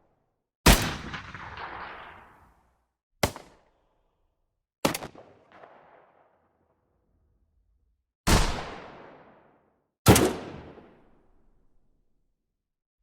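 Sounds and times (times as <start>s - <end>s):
gunshots echoing: 0.7s - 2.6s, 10.1s - 11.0s.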